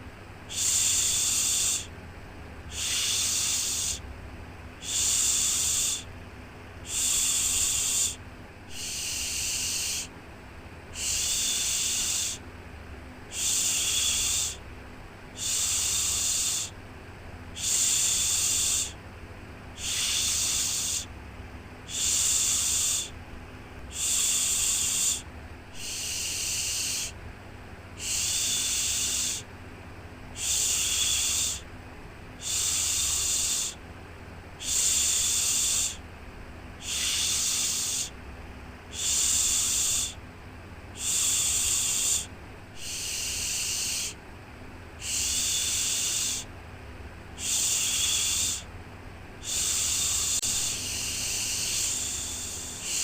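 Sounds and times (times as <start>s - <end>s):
person shushing: 2.7s - 4.0s, 6.8s - 10.1s, 13.3s - 14.6s, 17.6s - 19.0s, 19.8s - 21.1s, 21.9s - 23.2s, 23.9s - 25.2s, 25.8s - 27.2s, 28.0s - 29.4s, 41.0s - 44.2s, 45.0s - 46.5s, 47.4s - 48.7s, 49.4s - 53.0s.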